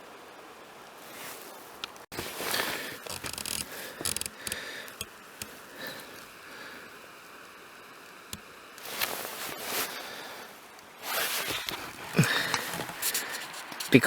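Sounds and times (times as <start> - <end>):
small clicks: 1.8 - 6.4, 8.0 - 9.4
rubbing and scraping handling: 2.1 - 6.2, 11.0 - 14.0.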